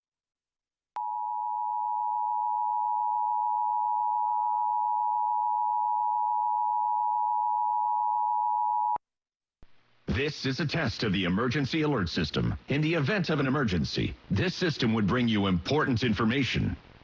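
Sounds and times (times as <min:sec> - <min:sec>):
two-tone alarm: 0:01.0 - 0:09.0.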